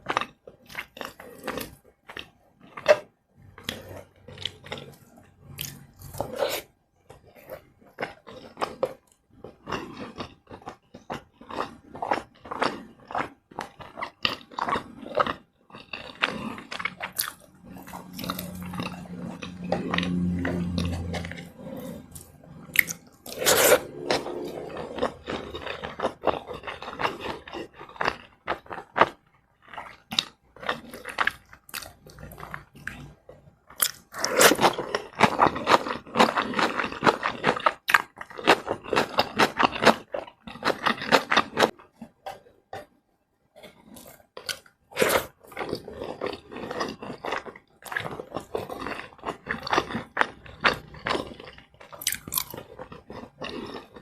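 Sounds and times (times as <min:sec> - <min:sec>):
chewing and crunching food: 0:00.0 - 0:54.0.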